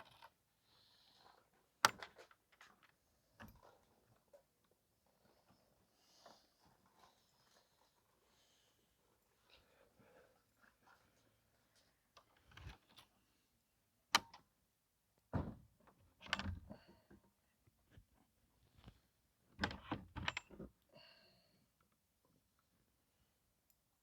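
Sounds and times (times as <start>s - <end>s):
metal latch click: 16.2s - 16.7s.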